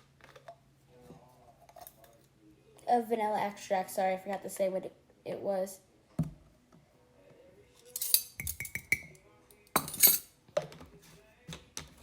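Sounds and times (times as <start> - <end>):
metal spoon clinking against cup: 7.9 - 9.2, 9.8 - 10.3.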